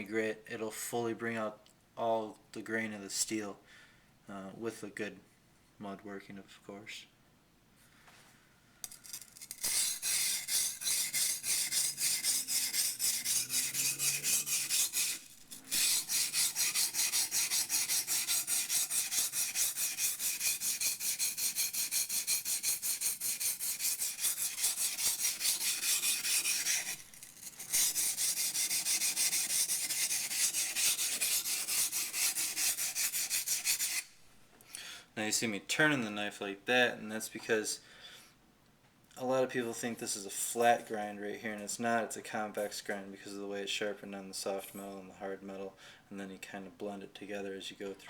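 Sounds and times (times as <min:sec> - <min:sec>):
steel scraping on a whetstone: 0:08.8 - 0:34.2.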